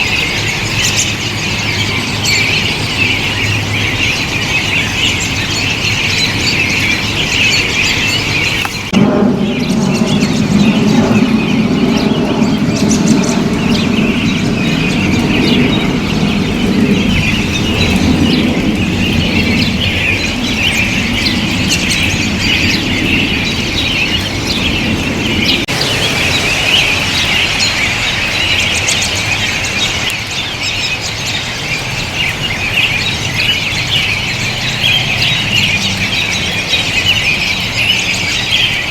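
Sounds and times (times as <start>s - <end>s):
flock of robins chirping: 0.0s - 38.9s
low rumble: 8.7s - 20.8s, 21.6s - 30.7s.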